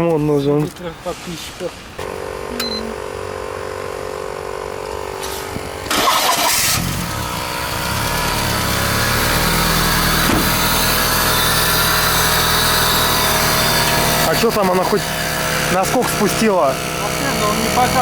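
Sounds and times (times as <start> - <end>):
car engine starting and idling: 2.0 - 18.0.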